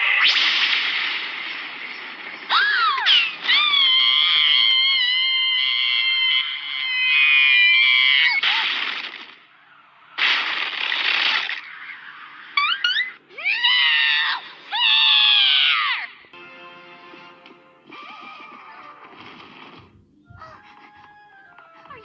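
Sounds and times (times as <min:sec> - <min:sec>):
high-pitched cartoon screaming: 0:02.5 - 0:09.0, 0:11.2 - 0:16.2.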